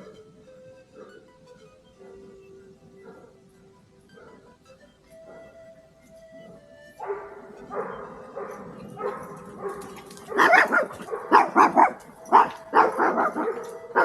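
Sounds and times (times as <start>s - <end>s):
dog barking and whining: 7.0s - 14.0s.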